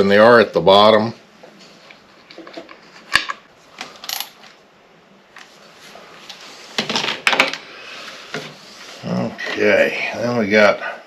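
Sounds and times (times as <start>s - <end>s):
metal parts clinking: 4.0s - 4.5s.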